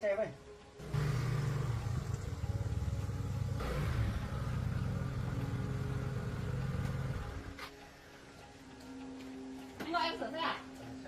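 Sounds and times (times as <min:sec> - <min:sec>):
engine running steadily: 0:00.8 - 0:07.5.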